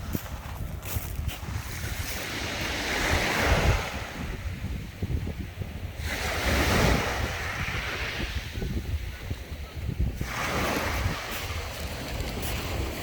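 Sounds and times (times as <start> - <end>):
wind buffeting microphone: 0.0 - 13.0
sea waves washing in: 1.4 - 13.0.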